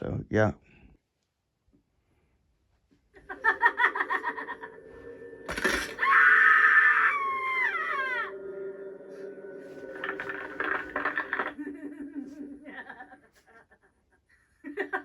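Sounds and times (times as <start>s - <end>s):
loud descending scream: 5.8s - 8.9s.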